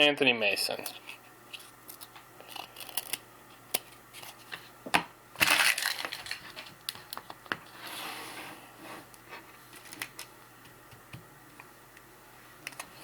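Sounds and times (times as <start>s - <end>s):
foil wrapper tearing and crinkling: 1.8s - 3.2s, 5.4s - 7.2s.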